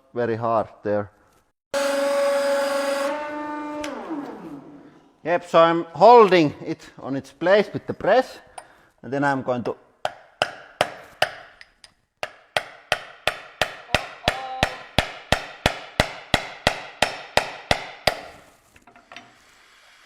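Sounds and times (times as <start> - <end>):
hammer striking metal pan: 12.2 - 18.4.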